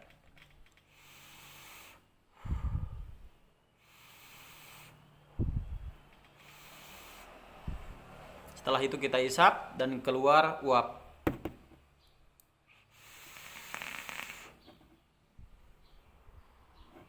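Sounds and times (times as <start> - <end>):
air hissing through vape: 0.8 - 3.1, 3.8 - 5.2, 6.2 - 8.0, 12.8 - 14.7
dull low thumps: 5.4 - 6.0.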